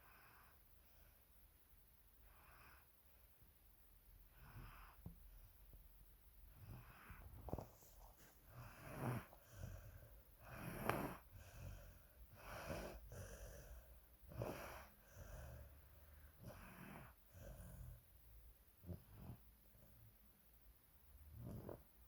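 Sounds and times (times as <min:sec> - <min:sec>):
soft snoring: 0:02.2 - 0:03.1, 0:04.3 - 0:05.2, 0:06.4 - 0:20.2, 0:21.2 - 0:22.0.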